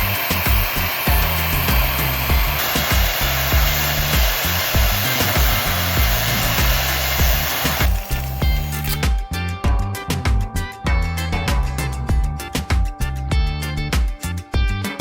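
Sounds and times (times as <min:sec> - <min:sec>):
angle grinder hissing: 0:00.0 - 0:09.0
music with steady beat: 0:00.0 - 0:15.0.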